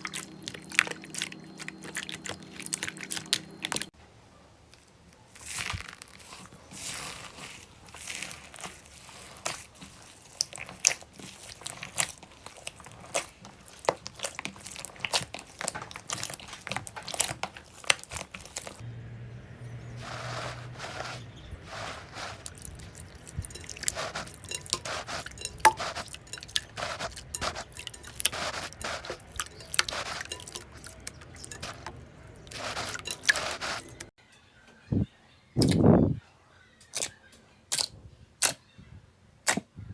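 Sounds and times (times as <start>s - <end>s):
slime squishing and crackling: 0.0s - 3.9s, 5.3s - 18.8s, 21.7s - 34.1s.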